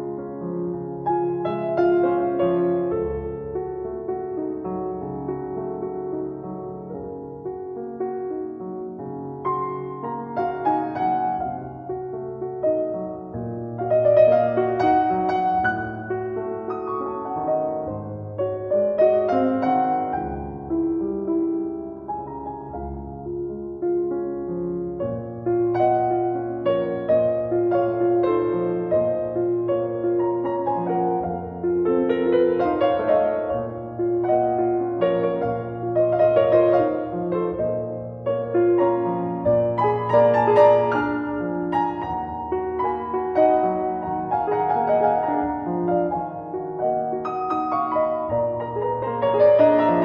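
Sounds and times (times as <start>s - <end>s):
gentle piano melody: 0.0s - 50.0s.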